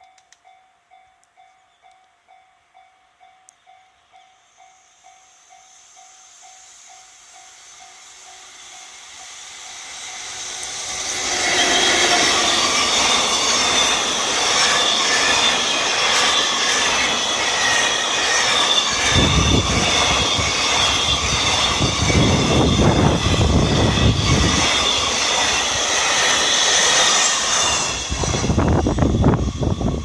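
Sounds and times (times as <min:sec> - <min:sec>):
train passing: 0:00.4 - 0:30.0
wheels rumbling on rails: 0:06.6 - 0:30.0.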